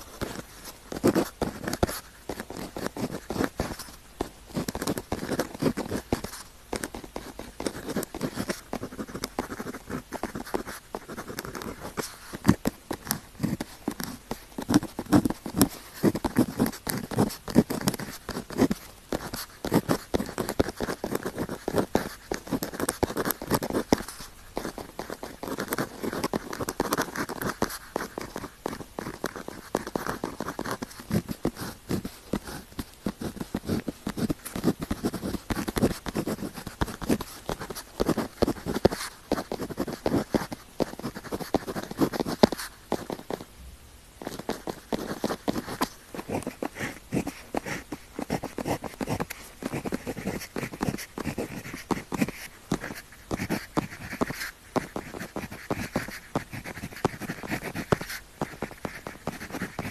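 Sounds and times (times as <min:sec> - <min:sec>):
pen writing on paper: 0:00.0 - 0:43.4, 0:44.2 - 0:59.9.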